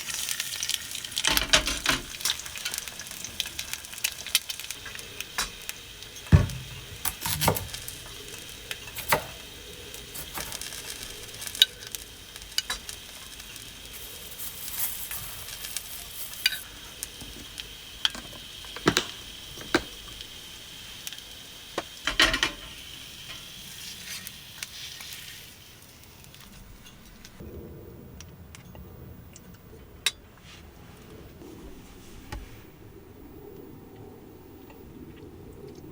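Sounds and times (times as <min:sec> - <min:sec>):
food sizzling in a pan: 0:00.0 - 0:27.4
utensil scraping a pan: 0:23.3 - 0:25.6.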